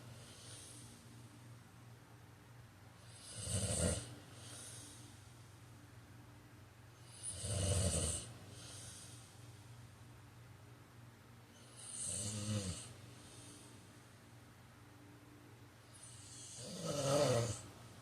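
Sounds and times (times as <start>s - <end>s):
faint low hum: 0.0s - 18.0s
man snoring: 3.0s - 4.8s, 7.1s - 8.9s, 11.7s - 13.0s, 16.0s - 17.7s.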